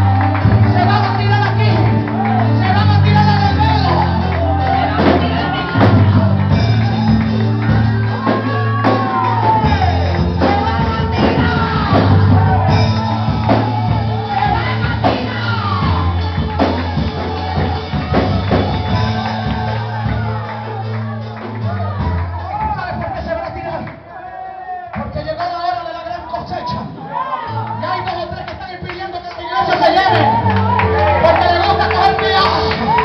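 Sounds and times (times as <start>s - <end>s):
live band music: 0.0s - 24.2s, 24.9s - 33.0s
person singing and shouting: 0.7s - 19.4s
drum strokes: 4.9s - 23.7s.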